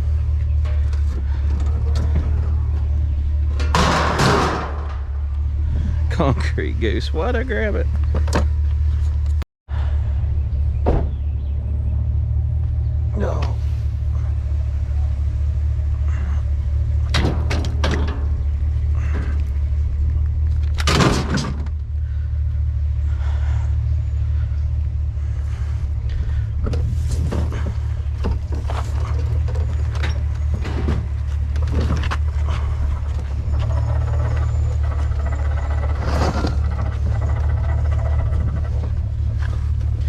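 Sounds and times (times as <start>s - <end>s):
truck engine rumbling: 0.0s - 40.0s
knocks and clatters: 0.2s - 5.5s, 16.9s - 21.9s, 26.6s - 40.0s.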